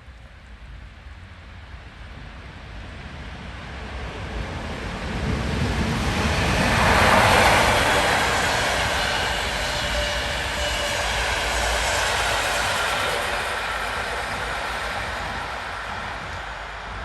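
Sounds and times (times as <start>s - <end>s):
train wheels rumbling on rail: 0.0s - 17.0s.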